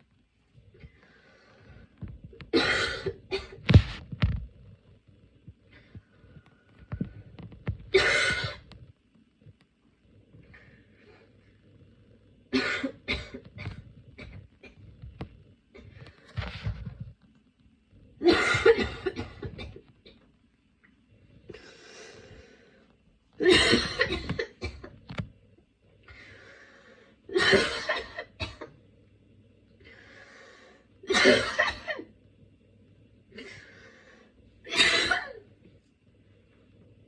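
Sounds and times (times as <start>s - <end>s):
faint breaths: 0.6s - 2.3s, 21.1s - 23.1s, 26.0s - 27.3s, 29.7s - 31.0s, 33.4s - 34.6s
person coughing harshly: 2.6s - 3.6s, 7.9s - 8.6s, 12.6s - 13.4s, 18.2s - 19.8s, 23.4s - 24.9s, 27.3s - 28.7s, 31.1s - 32.1s, 34.7s - 35.4s.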